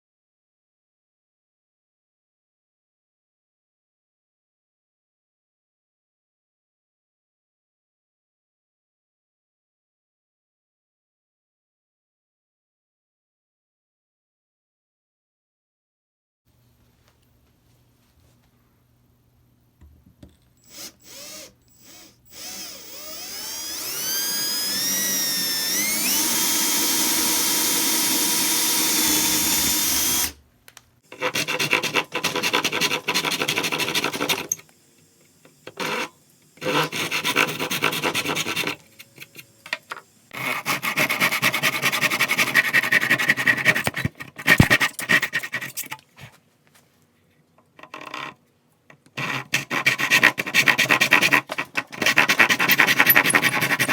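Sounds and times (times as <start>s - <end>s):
power tool whining: 20.6s - 30.4s.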